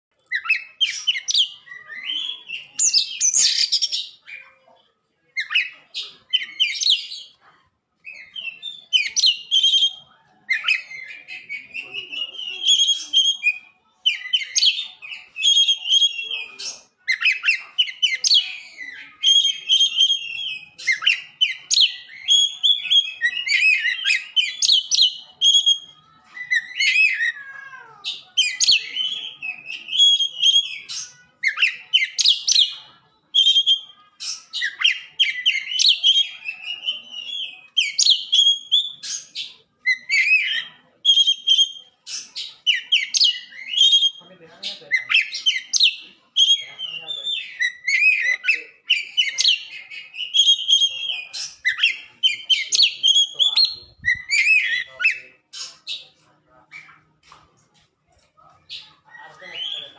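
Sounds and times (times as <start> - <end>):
bird singing whistled phrases: 8.1 - 27.4, 28.1 - 44.3, 45.0 - 55.7.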